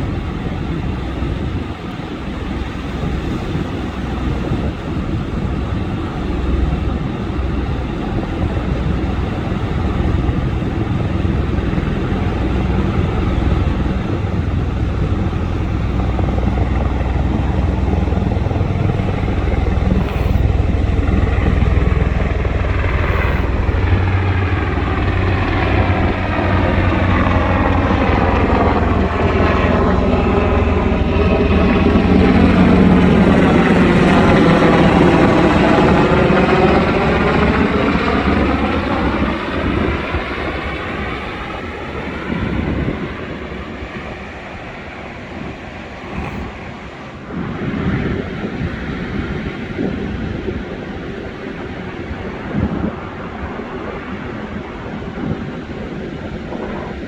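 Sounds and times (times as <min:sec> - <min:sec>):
helicopter rotor and engine rumble: 0:00.0 - 0:57.0.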